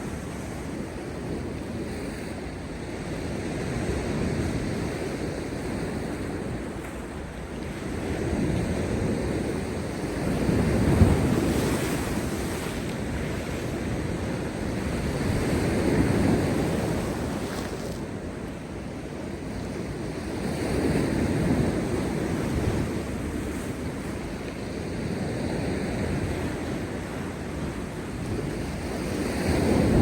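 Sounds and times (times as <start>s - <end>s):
sea waves crashing on rocks: 6.4s - 19.2s.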